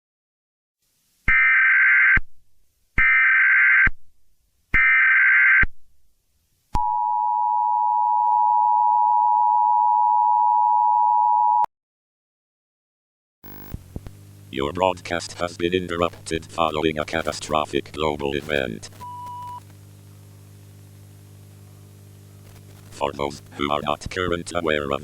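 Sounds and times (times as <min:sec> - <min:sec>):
harsh buzzing data bursts: 0:13.4 - 0:25.0
steady two-tone attention signal: 0:18.2 - 0:19.6.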